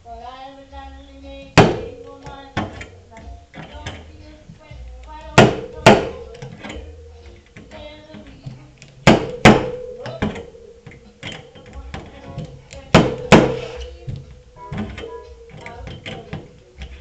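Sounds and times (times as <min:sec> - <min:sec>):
metal strikes on car panel: 0:01.5 - 0:02.9, 0:05.3 - 0:07.0, 0:08.5 - 0:16.5.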